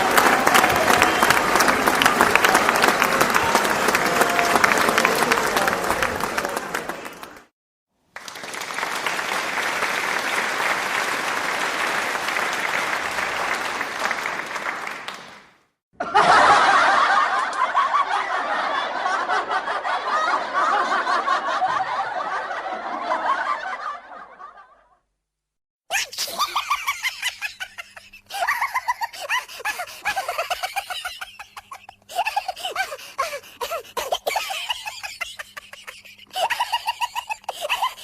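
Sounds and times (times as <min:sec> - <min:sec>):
crowd laughing: 0:00.0 - 0:07.4, 0:16.0 - 0:24.9, 0:25.9 - 0:38.0
audience applauding: 0:00.0 - 0:07.5, 0:08.1 - 0:15.7.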